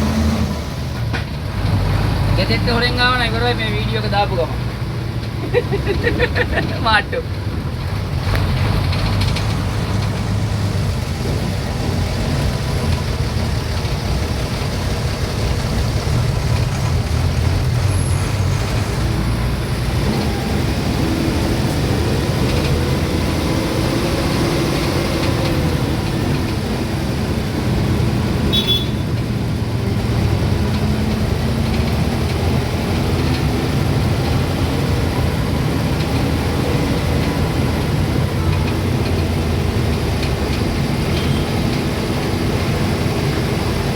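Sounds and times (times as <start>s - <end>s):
vehicle engine and road rumble: 0.0s - 43.9s.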